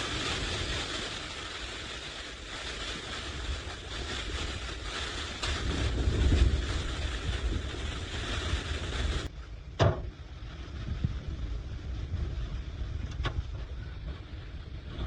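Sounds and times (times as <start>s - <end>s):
bright hiss: 0.0s - 9.3s
wind buffeting microphone: 0.0s - 15.0s.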